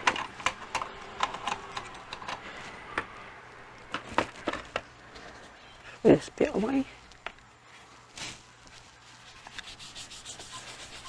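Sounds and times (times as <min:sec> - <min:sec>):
small tools clicking and tapping: 0:00.0 - 0:03.1.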